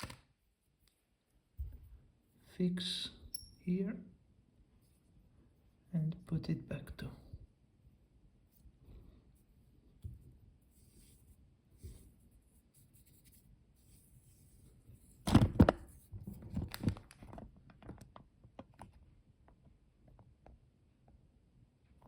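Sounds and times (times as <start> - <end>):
thread rubbing and scratching: 8.4 - 17.0.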